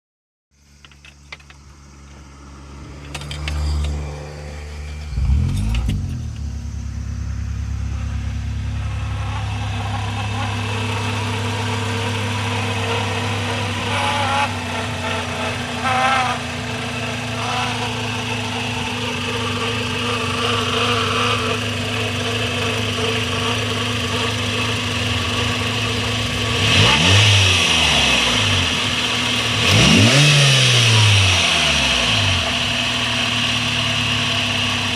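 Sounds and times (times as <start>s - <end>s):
car engine starting and idling: 0.6s - 34.9s.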